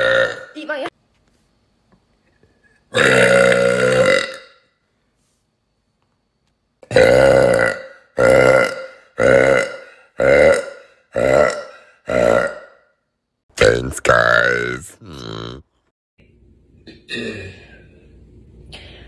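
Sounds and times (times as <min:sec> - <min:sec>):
woman burping: 0:00.0 - 0:00.6, 0:02.9 - 0:04.6, 0:06.8 - 0:12.8, 0:15.0 - 0:15.7, 0:16.9 - 0:17.7.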